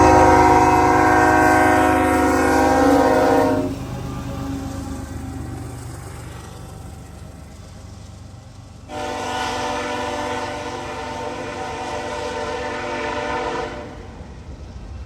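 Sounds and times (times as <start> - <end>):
locomotive air horn blast: 0.0 - 4.8, 8.9 - 14.1.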